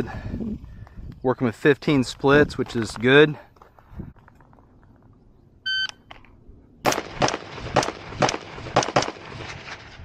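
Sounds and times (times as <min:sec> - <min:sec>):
shot timer beep: 0:05.7 - 0:06.0
rifle shots: 0:06.8 - 0:10.0.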